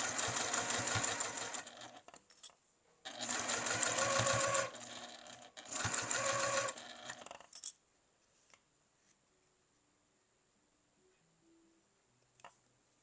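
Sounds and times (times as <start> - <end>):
sewing machine stitching: 0.0 - 2.0, 3.1 - 7.4.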